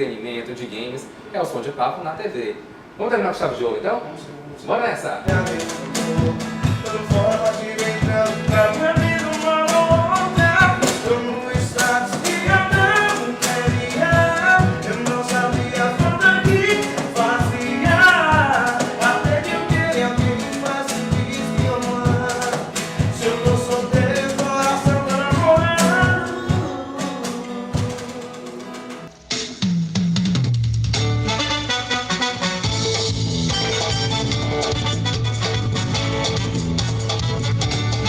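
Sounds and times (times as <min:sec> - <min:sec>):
band music with singing: 0:05.3 - 0:29.5, 0:31.0 - 0:38.0
steady drum beat: 0:05.3 - 0:31.8.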